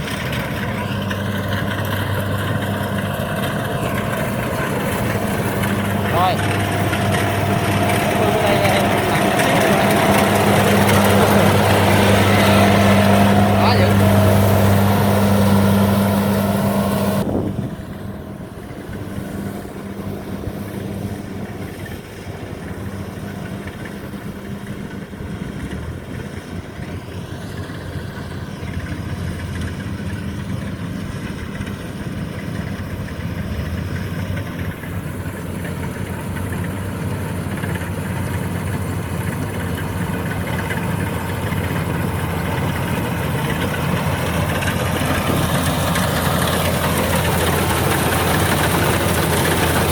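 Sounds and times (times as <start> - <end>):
combine harvester engine drone: 0.0 - 49.9.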